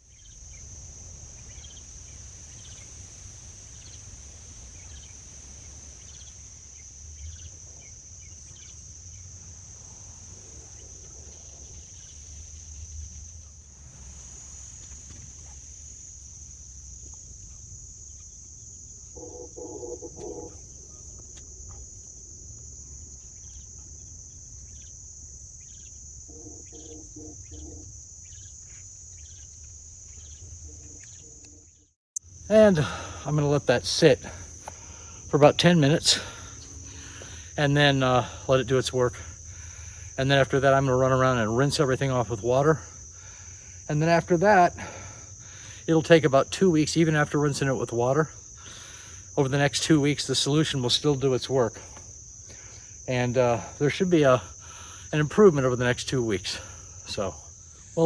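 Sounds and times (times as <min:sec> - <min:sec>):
bird calls: 0:00.0 - 0:15.7, 0:19.0 - 0:22.0, 0:25.6 - 0:31.9
crickets chirping: 0:00.0 - 0:58.0.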